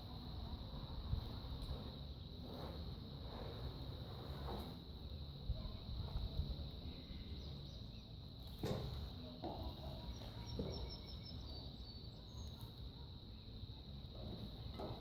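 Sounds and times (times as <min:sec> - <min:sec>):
faint bird chirps: 0:09.2 - 0:13.6.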